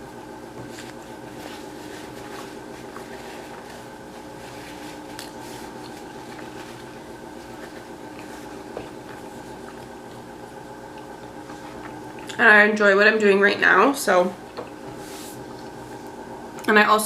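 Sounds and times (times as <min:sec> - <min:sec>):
electrical hum: 0:00.0 - 0:17.0
person chewing: 0:10.9 - 0:12.4.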